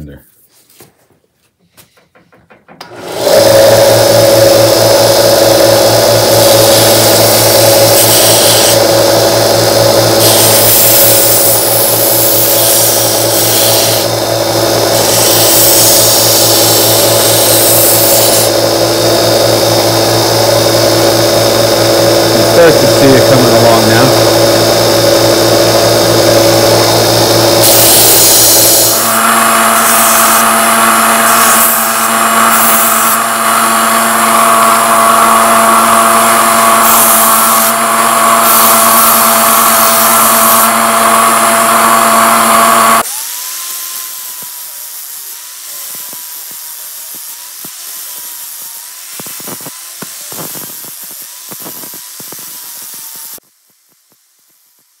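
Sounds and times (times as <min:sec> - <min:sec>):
wavering motor hum: 0:02.8 - 0:43.1
belt sander grinding metal: 0:02.8 - 0:53.4.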